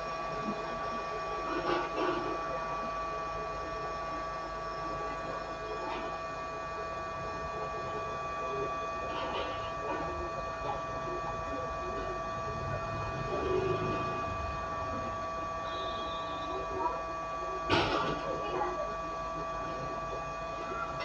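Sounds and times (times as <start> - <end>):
hot air blower whining: 9.8 - 21.0.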